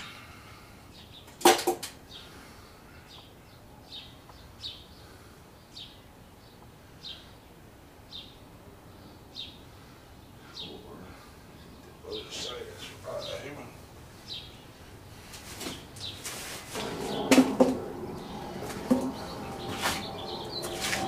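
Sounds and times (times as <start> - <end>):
sharp clatter of knocks: 1.3 - 2.0, 16.8 - 20.2
bird chirping: 2.0 - 14.9, 15.6 - 21.0.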